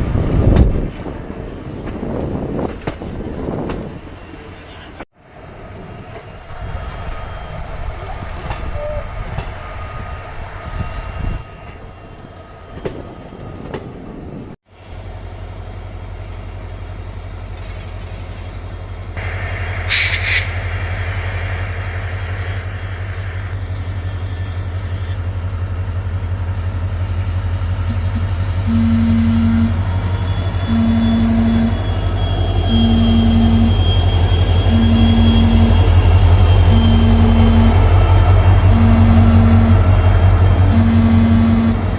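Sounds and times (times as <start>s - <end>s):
diesel locomotive engine throbbing: 5.3s - 41.9s
short sharp hiss: 19.8s - 20.8s.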